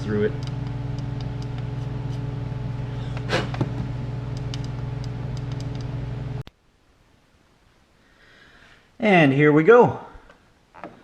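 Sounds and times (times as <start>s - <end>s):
steady low hum: 0.0s - 8.1s.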